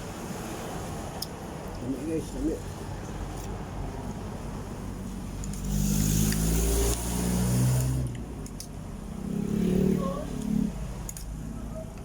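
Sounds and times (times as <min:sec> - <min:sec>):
vehicle engine passing by: 0:05.1 - 0:08.1, 0:09.1 - 0:11.0.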